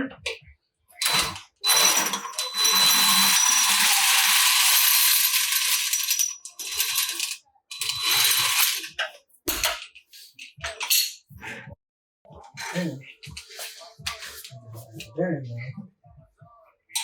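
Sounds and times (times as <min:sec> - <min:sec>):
metal rattling and clinking: 0:01.0 - 0:09.9.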